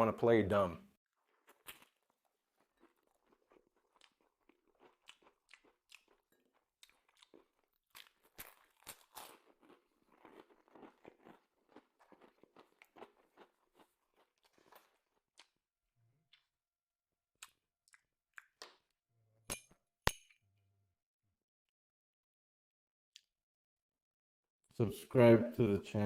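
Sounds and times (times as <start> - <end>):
chewing and crunching food: 1.1 - 16.6, 17.4 - 19.0.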